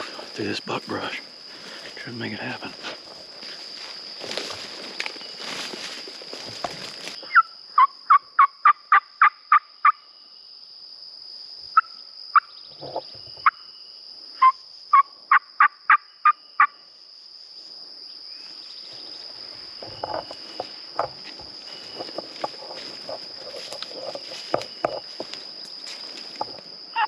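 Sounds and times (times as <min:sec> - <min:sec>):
rustling through brush: 0:02.7 - 0:07.2, 0:18.5 - 0:26.8.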